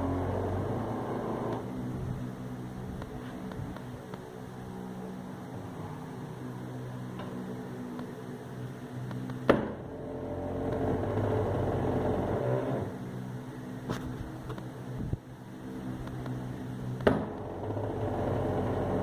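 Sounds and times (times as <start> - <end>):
drill press motor humming: 9.8 - 12.9, 17.3 - 19.0.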